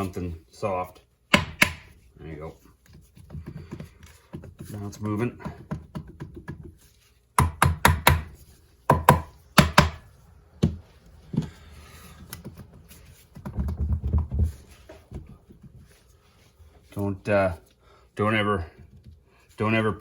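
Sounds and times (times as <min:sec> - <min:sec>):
hammer knocking on metal: 0:01.3 - 0:01.9, 0:07.4 - 0:08.3, 0:08.9 - 0:10.0.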